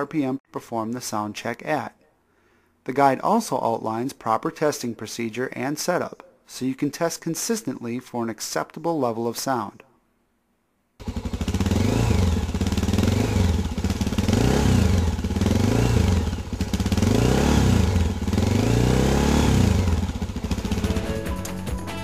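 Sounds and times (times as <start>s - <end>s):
off-road vehicle engine revving: 11.0s - 21.0s.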